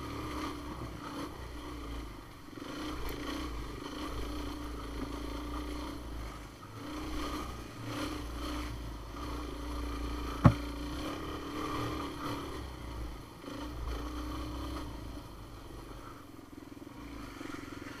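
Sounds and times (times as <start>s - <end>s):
off-road vehicle engine running: 0.0s - 18.0s
sharp knock: 10.4s - 10.6s.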